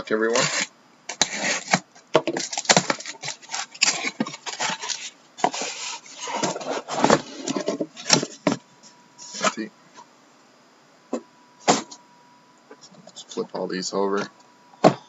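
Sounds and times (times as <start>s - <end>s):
cardboard boxes knocking and scraping: 4.0s - 8.6s.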